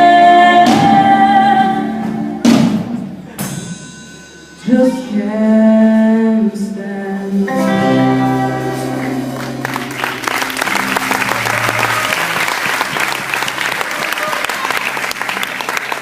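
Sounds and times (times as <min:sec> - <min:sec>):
audience applause: 0:09.1 - 0:16.0.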